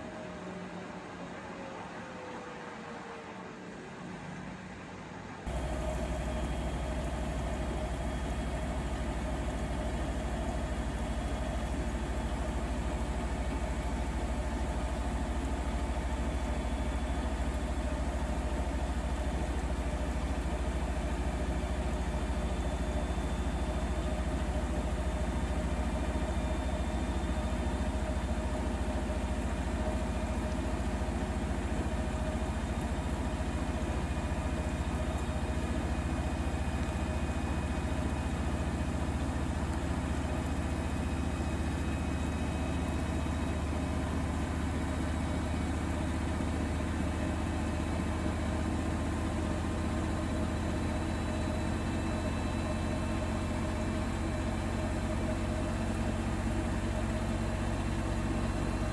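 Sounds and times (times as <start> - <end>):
faint even whine: 5.5 - 30.6
washing machine humming: 5.5 - 58.9.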